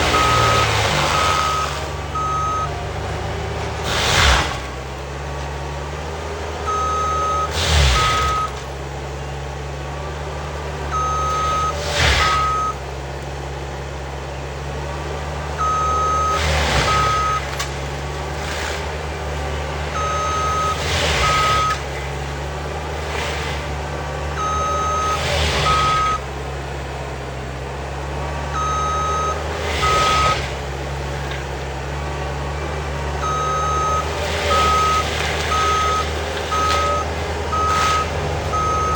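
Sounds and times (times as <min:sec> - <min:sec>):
engine surge: 0:00.0 - 0:08.8, 0:10.8 - 0:12.9, 0:15.6 - 0:27.1, 0:27.9 - 0:38.9
skid steer engine running: 0:00.0 - 0:38.9
backup alarm beeping: 0:00.1 - 0:02.8, 0:06.7 - 0:08.5, 0:10.9 - 0:12.8, 0:15.6 - 0:17.5, 0:20.0 - 0:21.8, 0:24.4 - 0:26.2, 0:28.6 - 0:30.4, 0:33.2 - 0:38.9.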